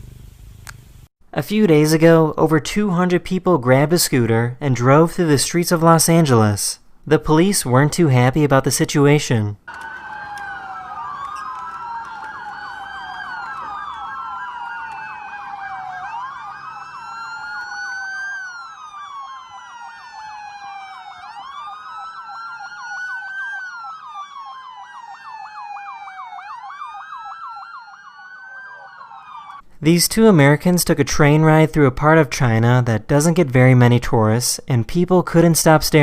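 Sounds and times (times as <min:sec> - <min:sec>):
police sirens wailing: 0:09.6 - 0:29.6.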